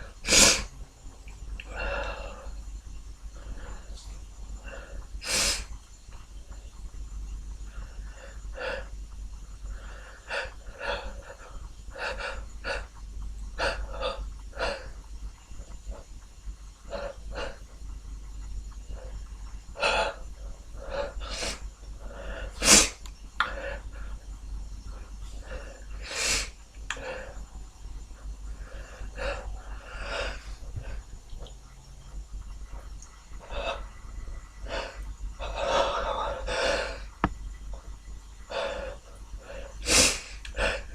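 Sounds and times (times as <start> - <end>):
breaths through the nose: 0.0 - 0.8, 3.3 - 5.8, 20.8 - 24.3, 24.9 - 31.2, 38.5 - 40.9
person sniffling: 22.6 - 23.6.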